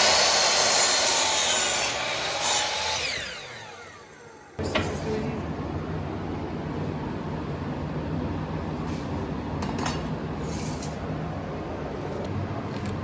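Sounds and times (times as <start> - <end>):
saw blade spinning down: 0.0 - 4.5
power saw cutting wood: 0.0 - 4.6.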